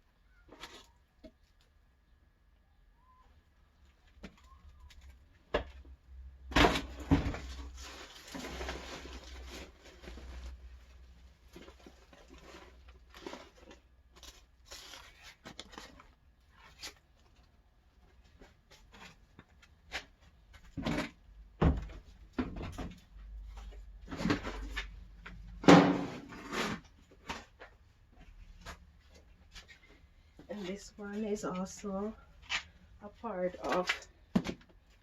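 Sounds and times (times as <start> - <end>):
hollow plastic knocks and thumps: 20.7 - 23.0.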